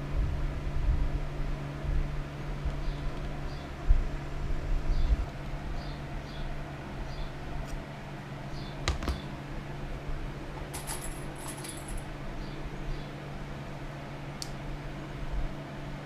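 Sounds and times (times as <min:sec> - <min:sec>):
steady low hum: 0:00.0 - 0:16.0
metal objects jingling: 0:10.7 - 0:12.1.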